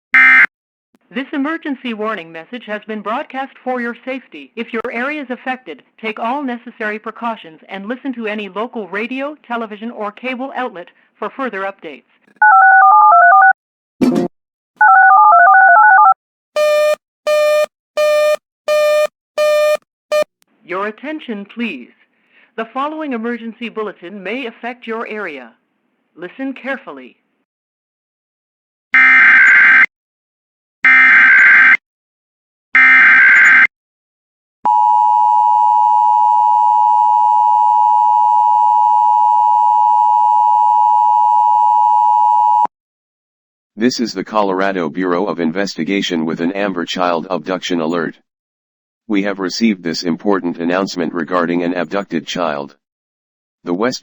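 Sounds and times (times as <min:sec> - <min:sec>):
telephone keypad tones: 0:14.8 - 0:20.3
buzzy beep: 0:16.6 - 0:20.3.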